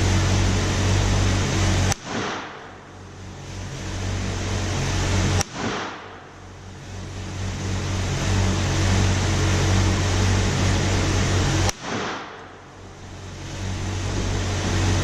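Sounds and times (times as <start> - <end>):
low rumble: 0.0 - 15.0
gunshot: 1.9 - 2.8, 5.4 - 6.2, 11.7 - 12.4.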